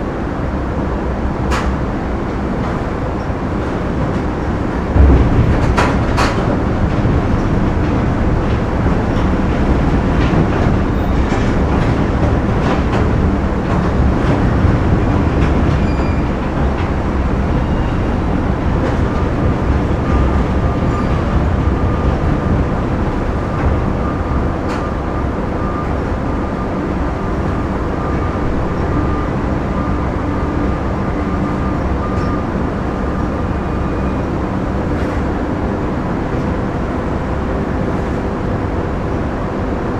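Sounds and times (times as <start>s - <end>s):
factory machinery rumbling: 0.0s - 39.9s
machinery clanks and knocks: 1.4s - 35.7s.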